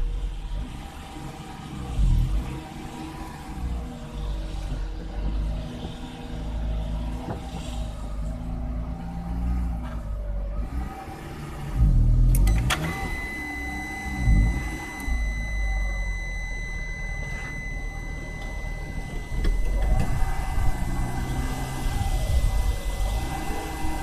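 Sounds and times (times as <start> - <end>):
car engine running unevenly: 0.0 - 24.0
high electronic tone: 12.5 - 24.0.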